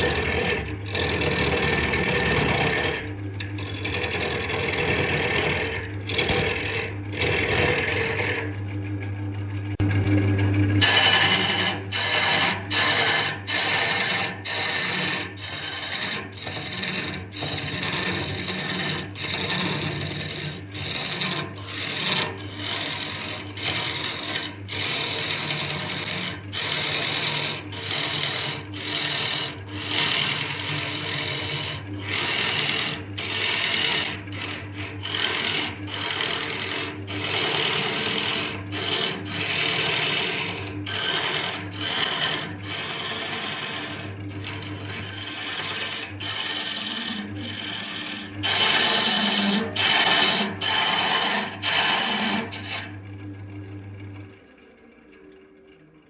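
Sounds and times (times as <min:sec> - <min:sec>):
tool scraping spinning wood: 0:00.0 - 0:08.7, 0:10.8 - 0:53.0
lathe motor hum: 0:00.0 - 0:53.6.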